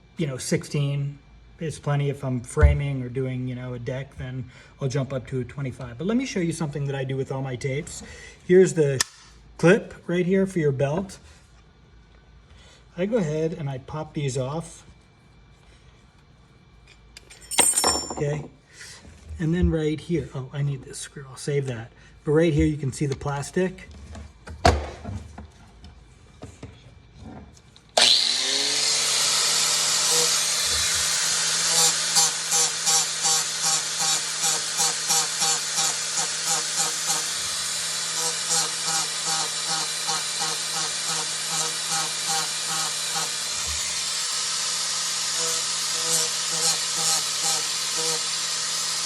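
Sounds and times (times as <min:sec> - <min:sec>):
power tool whining: 0:27.9 - 0:49.0.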